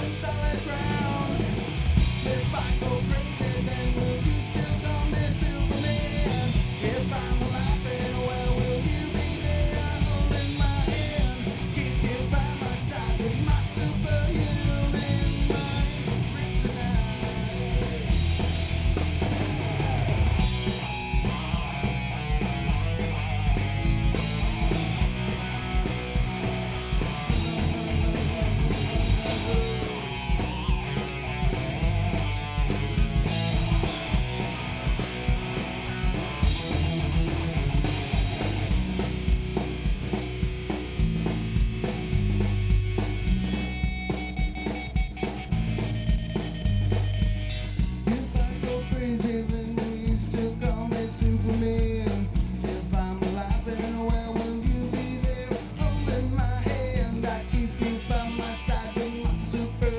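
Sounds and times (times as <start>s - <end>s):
bass guitar: 0.0s - 59.9s
drum kit: 0.0s - 59.9s
electric guitars: 0.0s - 59.9s.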